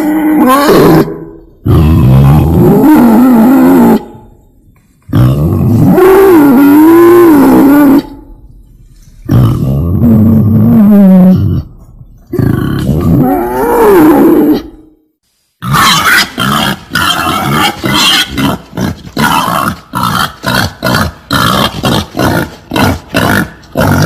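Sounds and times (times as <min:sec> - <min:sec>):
wild boar grunting: 0:15.6 - 0:24.0.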